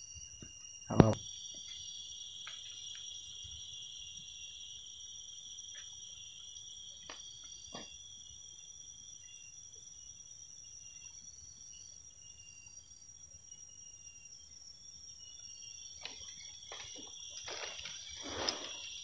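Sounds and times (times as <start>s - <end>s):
insects droning: 0.0s - 19.0s.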